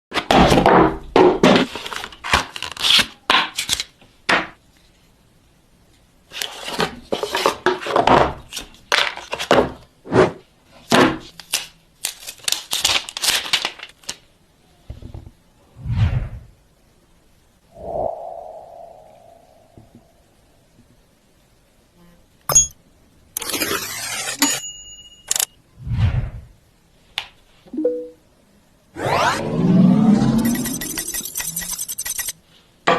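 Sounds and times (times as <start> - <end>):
packaging tearing and rustling: 1.7 - 3.9, 11.4 - 14.3.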